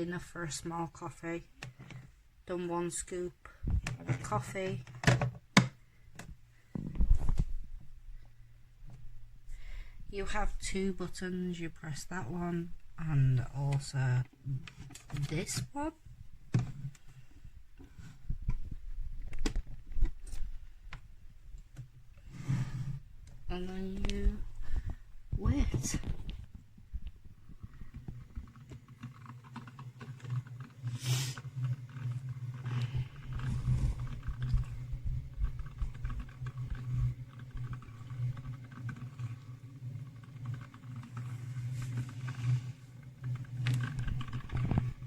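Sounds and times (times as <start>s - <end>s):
coffee maker gurgling: 0.0s - 45.0s
steady low hum: 5.7s - 45.0s.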